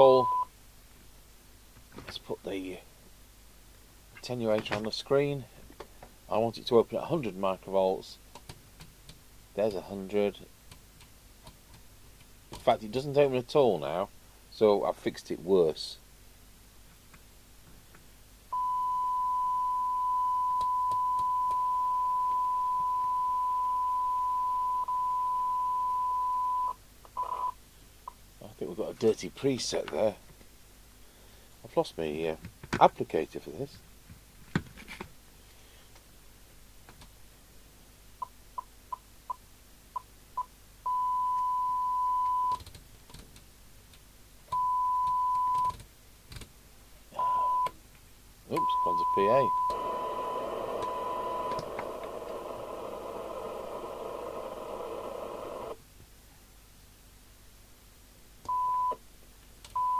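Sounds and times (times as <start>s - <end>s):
steady test tone from loudspeaker: 0.0s - 0.5s, 48.5s - 51.7s
test tone through radio speaker: 0.0s - 0.5s, 18.5s - 27.6s, 40.9s - 42.6s, 47.2s - 47.7s, 48.5s - 55.8s.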